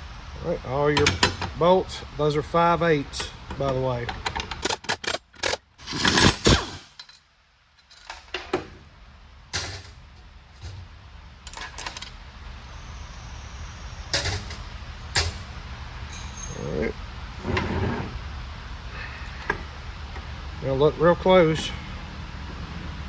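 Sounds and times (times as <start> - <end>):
wrench and bolts clinking on metal: 14.1 - 16.9.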